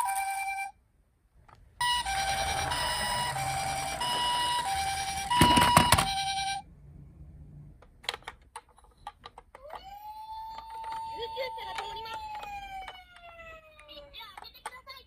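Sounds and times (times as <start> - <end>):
toy two-tone siren: 0.0 - 0.7, 1.8 - 6.6, 9.6 - 14.2
clattering knocks: 5.1 - 6.2.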